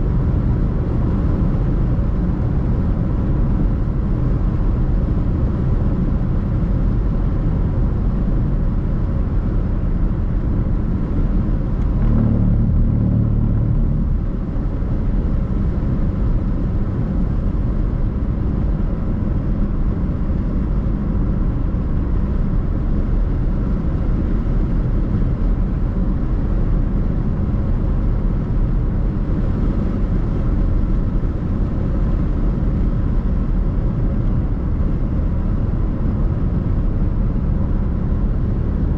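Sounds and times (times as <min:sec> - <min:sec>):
car road and engine rumble: 0:00.0 - 0:38.9
low hum: 0:10.4 - 0:18.0.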